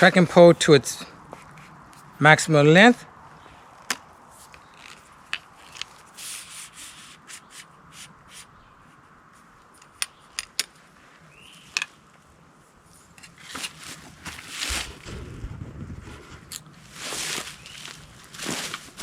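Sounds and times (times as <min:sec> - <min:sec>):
trekking pole clicks: 0:03.8 - 0:06.1, 0:09.7 - 0:10.8.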